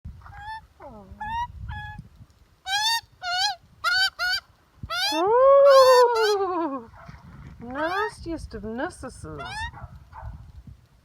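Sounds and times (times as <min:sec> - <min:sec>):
magpie calling: 0:02.7 - 0:06.4.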